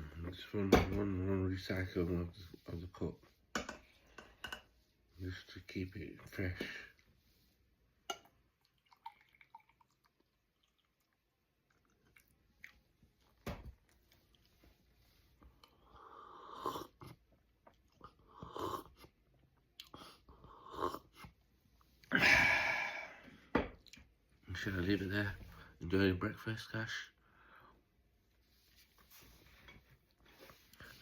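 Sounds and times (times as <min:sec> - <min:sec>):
person chewing: 0:08.7 - 0:14.6.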